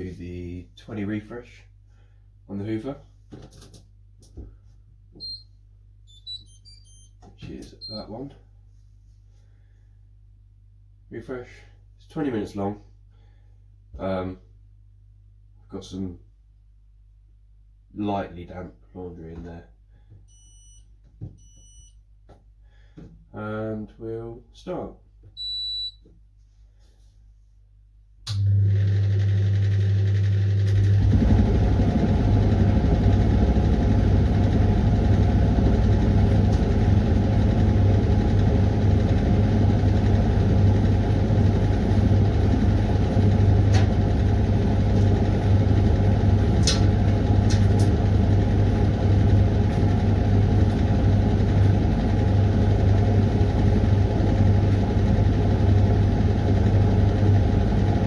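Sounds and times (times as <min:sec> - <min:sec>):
low mains hum: 0:00.0 - 0:58.0
washing machine beep: 0:05.2 - 0:07.2, 0:07.8 - 0:08.1, 0:20.3 - 0:22.0, 0:25.4 - 0:26.0
washing machine rushing: 0:28.5 - 0:58.0.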